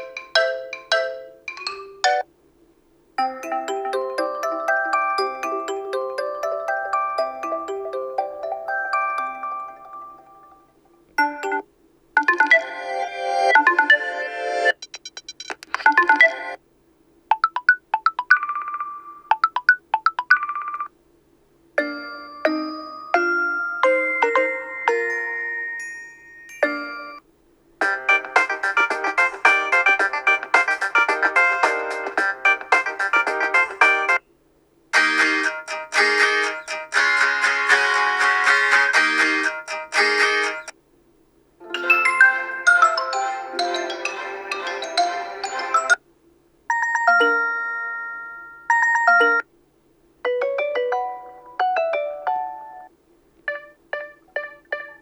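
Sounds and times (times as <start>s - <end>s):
chime-like tune: 3.2s - 11.6s, 21.8s - 27.2s, 41.7s - 46.0s, 46.7s - 49.4s
phone ringtone melody: 3.2s - 14.8s, 15.8s - 16.6s, 17.3s - 20.9s, 21.8s - 27.2s, 41.7s - 46.0s, 46.7s - 49.5s, 50.3s - 52.9s, 53.5s - 55.0s
quick repeated pitched notes: 53.5s - 55.0s.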